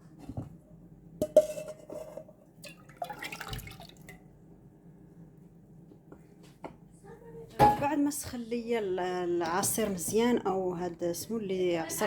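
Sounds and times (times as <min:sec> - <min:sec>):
kitchen clatter: 0:07.6 - 0:08.1.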